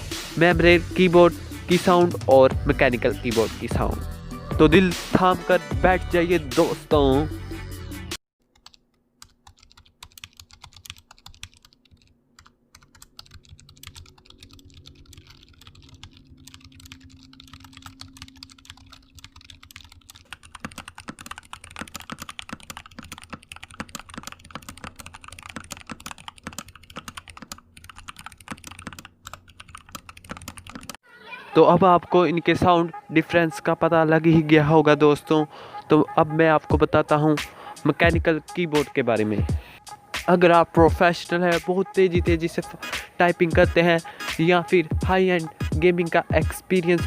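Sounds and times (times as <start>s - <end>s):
soft membrane keyboard typing: 8.4s - 31.0s
mechanical keyboard clicks: 8.5s - 31.0s.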